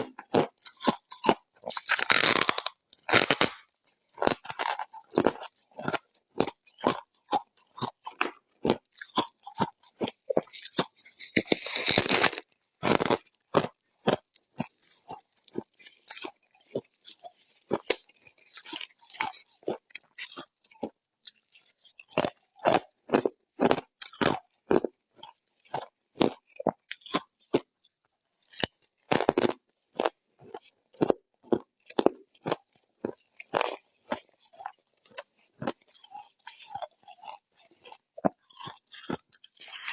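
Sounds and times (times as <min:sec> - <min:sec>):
rasping crunch: 0:00.0 - 0:19.4
ice crunching and chewing: 0:00.0 - 0:39.9.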